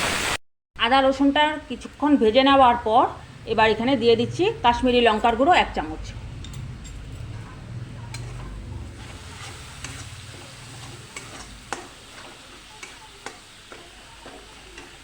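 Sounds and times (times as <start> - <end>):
paste frying in oil: 7.1 - 15.0.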